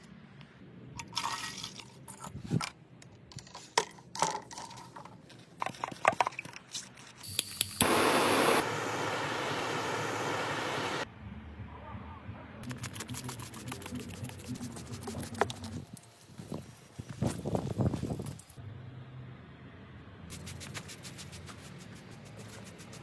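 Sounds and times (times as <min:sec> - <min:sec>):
spray hissing: 0:07.2 - 0:11.0.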